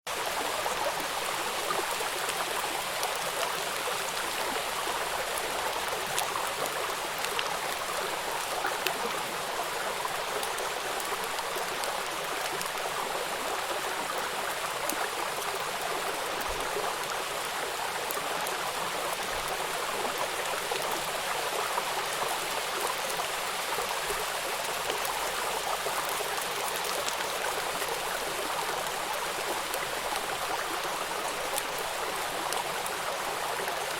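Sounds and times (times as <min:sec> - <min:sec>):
rain falling: 0:00.1 - 0:33.9.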